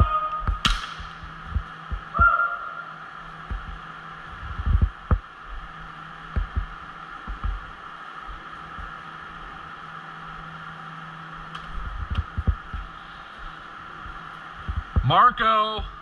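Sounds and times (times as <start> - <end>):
low thuds: 0.0 - 2.3, 3.4 - 5.3, 6.3 - 7.7, 11.7 - 12.9, 14.6 - 15.1
steady background hum: 0.0 - 16.0
sharp click: 0.4 - 1.3
distant shout: 2.1 - 3.1.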